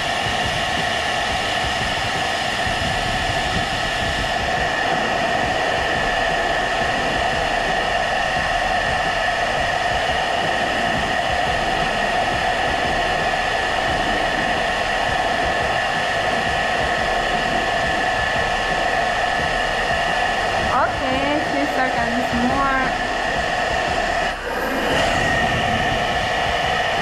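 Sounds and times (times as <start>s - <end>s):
hair dryer running: 0.0s - 27.0s.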